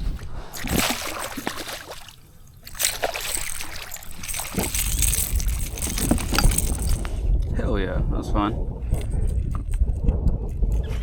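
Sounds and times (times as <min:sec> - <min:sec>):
water splashing around kayak: 0:00.0 - 0:07.1
wind buffeting microphone: 0:00.0 - 0:11.0.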